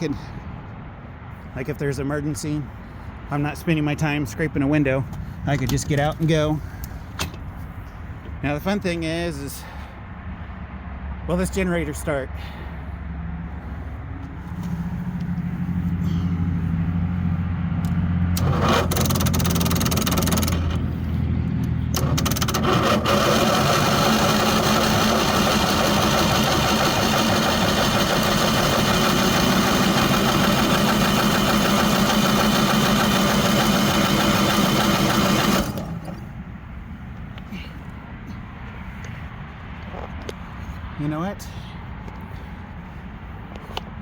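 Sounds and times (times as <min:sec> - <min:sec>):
generator starting and running: 0:12.4 - 0:39.2.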